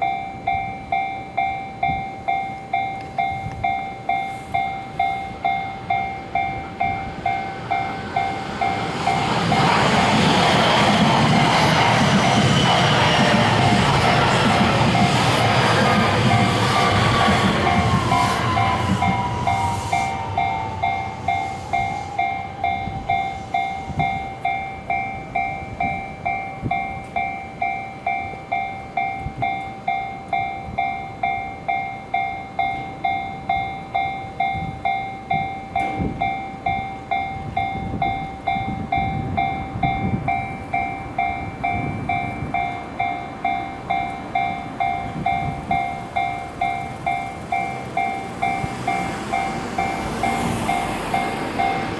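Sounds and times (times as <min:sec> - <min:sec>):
level-crossing warning bell: 0:00.0 - 0:51.9
passing train: 0:00.0 - 0:51.9
falling whine: 0:05.5 - 0:24.9, 0:44.4 - 0:51.9.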